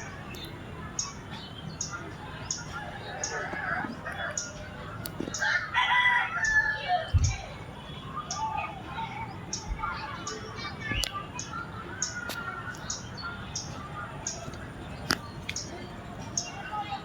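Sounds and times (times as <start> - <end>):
rooster crowing: 5.4 - 7.1.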